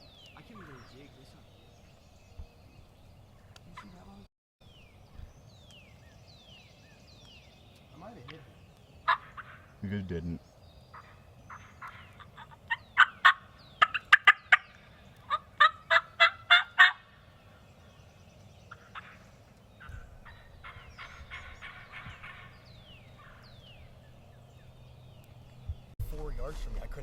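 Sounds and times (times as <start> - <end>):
wild turkey yelping: 8.2 - 9.9, 10.9 - 18.0, 18.7 - 23.9.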